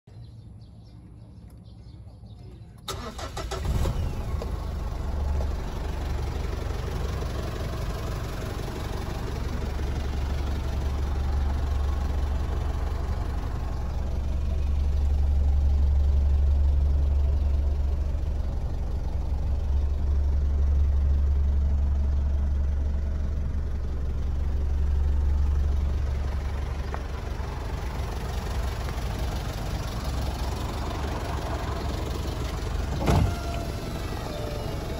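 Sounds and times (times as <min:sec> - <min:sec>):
diesel engine starting and idling: 0:02.8 - 0:34.9.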